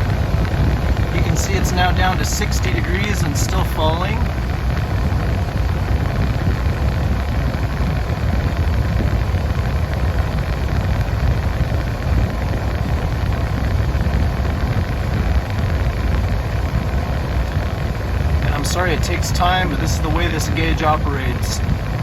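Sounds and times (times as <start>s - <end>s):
air-conditioning blower rushing: 0.0s - 22.0s
car engine idling: 0.0s - 22.0s.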